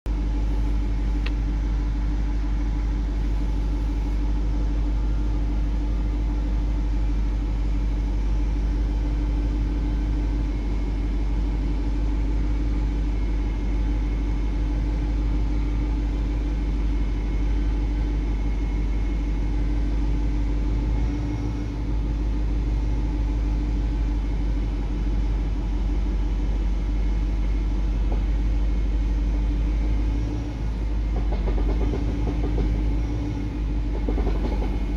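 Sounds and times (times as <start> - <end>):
car engine idling: 0.1 - 4.3, 23.8 - 34.9.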